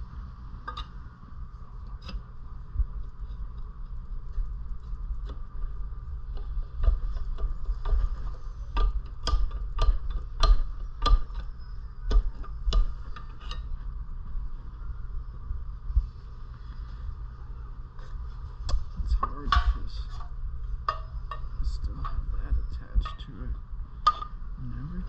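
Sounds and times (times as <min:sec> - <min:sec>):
metal-on-metal strikes: 0:24.0 - 0:24.4.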